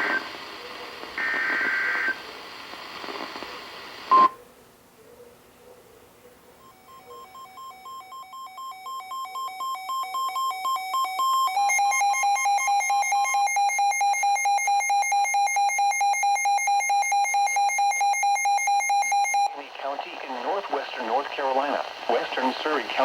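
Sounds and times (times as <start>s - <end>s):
two-tone electronic alarm beeping: 6.6s - 19.5s.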